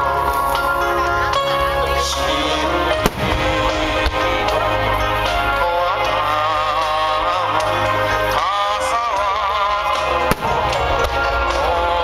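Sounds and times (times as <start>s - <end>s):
music with long held tones: 0.0s - 12.0s
firework bang: 3.0s - 3.8s, 10.3s - 11.1s.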